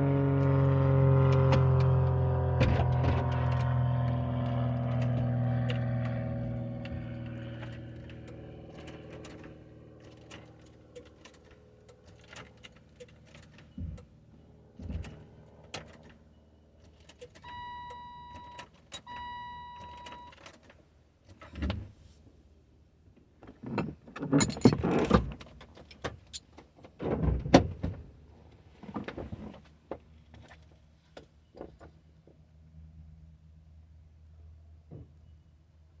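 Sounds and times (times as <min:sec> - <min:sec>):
low hum: 0:00.0 - 0:11.6
car warning chime beeps: 0:17.2 - 0:20.4.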